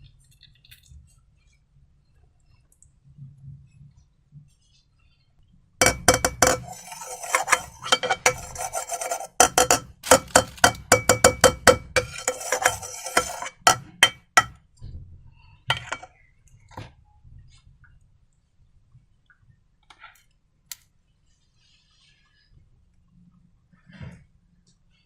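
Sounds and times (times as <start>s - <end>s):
stirring and scraping slime: 5.8s - 14.6s, 15.7s - 16.1s.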